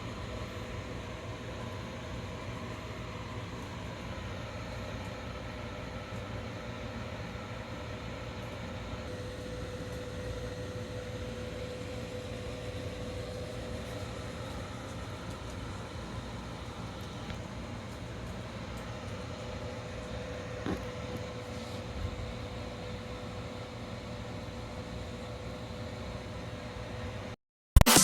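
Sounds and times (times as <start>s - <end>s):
machine hum and hiss: 0.0s - 28.0s.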